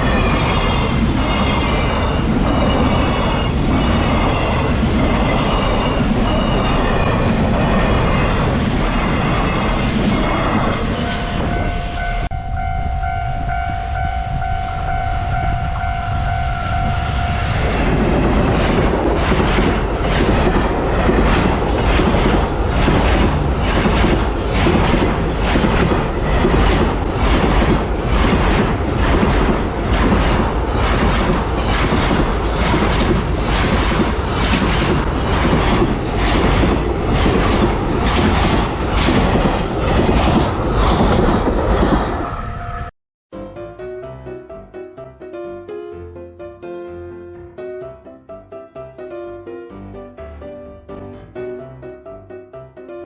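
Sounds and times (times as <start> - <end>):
freight train rumble and clatter: 0.0 - 42.9
wheels clacking over rail joints: 18.1 - 42.0.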